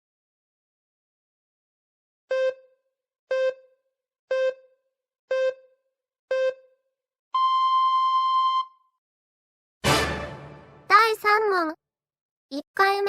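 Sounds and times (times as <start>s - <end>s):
electronic countdown beeps: 2.3s - 6.8s, 7.4s - 8.8s.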